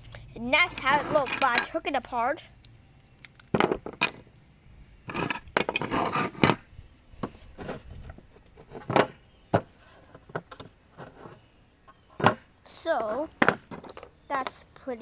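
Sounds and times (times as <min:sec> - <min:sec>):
small parts rattling and scraping: 0:00.0 - 0:02.0, 0:02.7 - 0:04.3, 0:05.0 - 0:14.6
parts knocking on surface: 0:12.1 - 0:12.4, 0:13.0 - 0:14.1.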